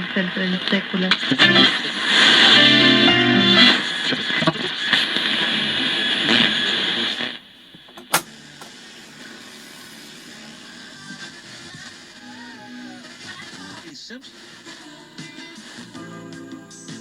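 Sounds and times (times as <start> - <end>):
radio static: 0.0 - 10.3
faint hiss: 0.7 - 13.2.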